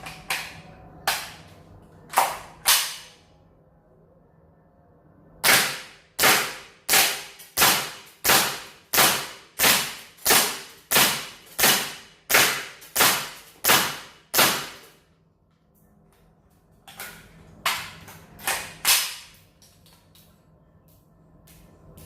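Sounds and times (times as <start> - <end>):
airsoft rifle shots: 5.4 - 14.9.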